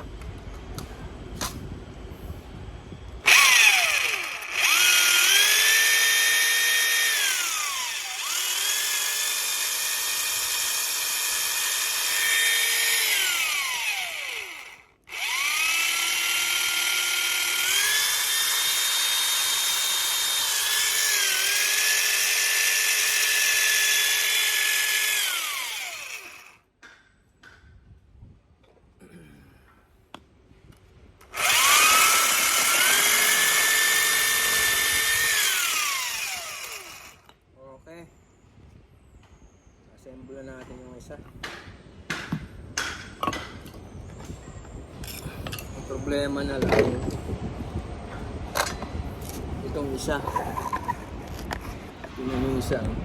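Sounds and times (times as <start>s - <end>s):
jigsaw motor whining: 3.2s - 26.7s, 31.2s - 37.3s.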